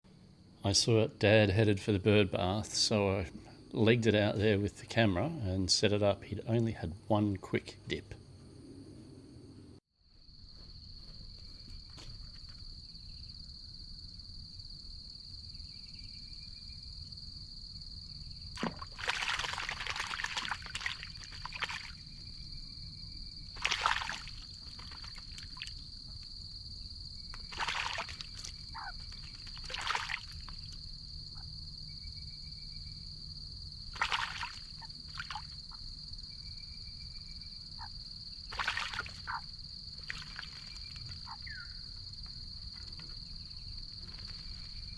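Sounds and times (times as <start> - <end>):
bird splashing water: 18.6 - 22.2, 23.5 - 25.9, 27.3 - 30.8, 33.9 - 35.7, 38.5 - 41.5.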